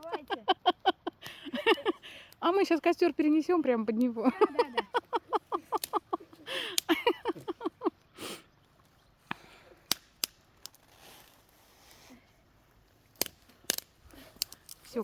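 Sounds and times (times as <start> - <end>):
dry wood snapping: 1.1 - 8.0, 8.6 - 11.5, 12.8 - 15.0
breathy sniff: 8.1 - 8.5, 10.9 - 12.4.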